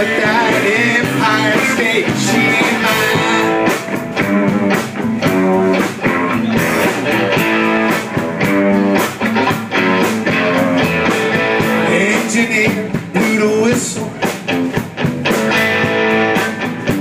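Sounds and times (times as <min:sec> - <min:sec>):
person singing: 0:00.0 - 0:03.7, 0:11.8 - 0:14.3
blues guitar fill: 0:00.0 - 0:17.0
drums steady beat: 0:00.0 - 0:17.0.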